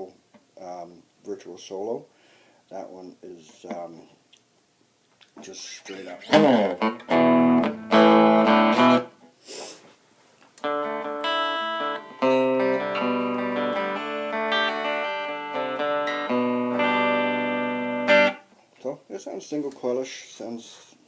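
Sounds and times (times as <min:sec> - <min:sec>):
clean electric guitar chords: 0:06.2 - 0:09.1, 0:10.6 - 0:18.4.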